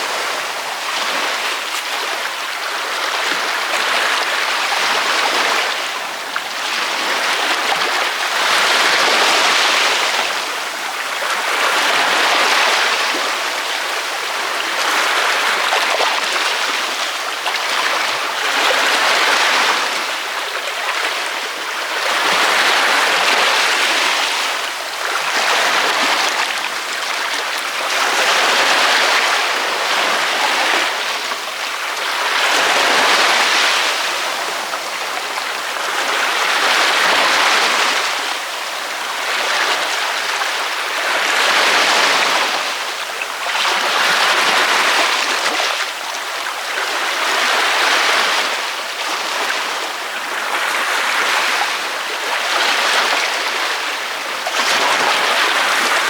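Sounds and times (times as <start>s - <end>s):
ocean waves breaking on beach: 0.0s - 56.0s.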